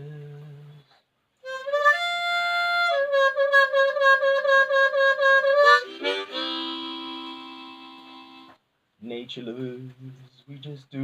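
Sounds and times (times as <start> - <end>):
instrumental music: 0.0 - 8.7.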